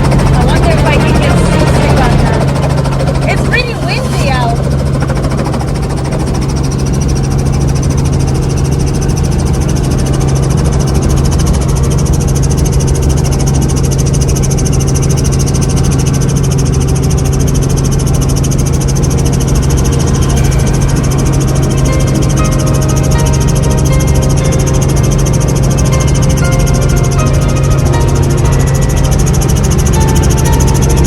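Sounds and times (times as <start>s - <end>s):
helicopter engine and rotor drone: 0.0s - 31.0s.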